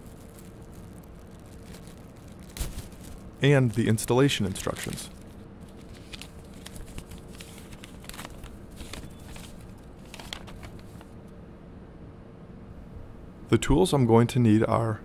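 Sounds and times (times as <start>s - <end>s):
low hum: 0.0s - 14.0s.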